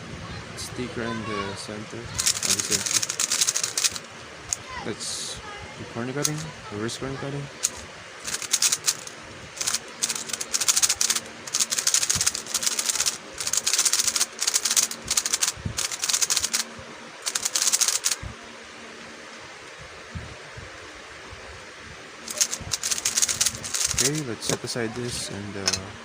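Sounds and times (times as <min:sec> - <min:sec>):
puzzle cube clicking and clattering: 0:02.2 - 0:04.6, 0:06.2 - 0:06.5, 0:07.6 - 0:18.2, 0:22.3 - 0:24.3.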